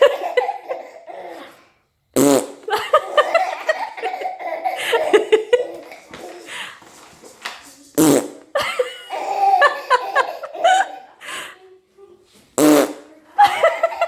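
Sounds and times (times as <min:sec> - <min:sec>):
baby laughing: 0:00.0 - 0:01.6, 0:02.7 - 0:06.7, 0:07.8 - 0:11.2, 0:13.4 - 0:14.0
loud fart noise: 0:02.2 - 0:02.7, 0:08.0 - 0:08.5, 0:12.6 - 0:13.1.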